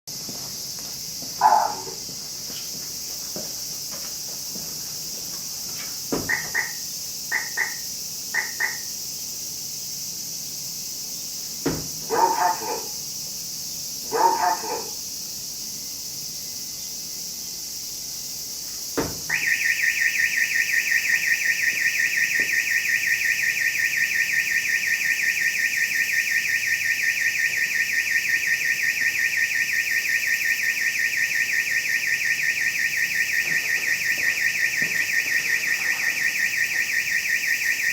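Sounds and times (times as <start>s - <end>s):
car alarm chirps: 6.2s - 9.0s, 12.1s - 13.0s, 14.1s - 15.0s, 19.3s - 37.9s
car alarm click: 6.3s - 7.8s, 8.4s - 8.9s, 19.3s - 37.9s
warbling car alarm siren: 6.3s - 8.9s, 12.1s - 13.0s, 14.1s - 15.0s, 19.3s - 37.9s.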